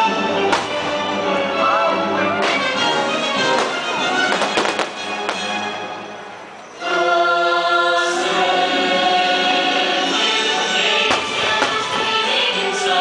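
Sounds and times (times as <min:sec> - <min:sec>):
choir singing sustained chords: 0:00.0 - 0:13.0
soundtrack music: 0:00.0 - 0:13.0
firework bangs: 0:00.5 - 0:01.3, 0:02.4 - 0:05.8, 0:11.0 - 0:12.5.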